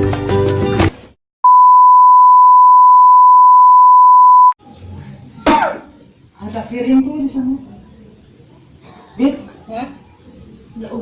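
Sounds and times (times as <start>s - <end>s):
music: 0.0s - 1.1s
loud electronic beep: 1.5s - 4.6s.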